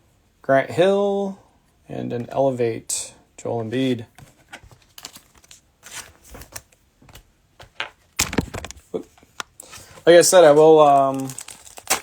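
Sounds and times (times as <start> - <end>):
plastic wrapper rustle: 8.2 - 12.0.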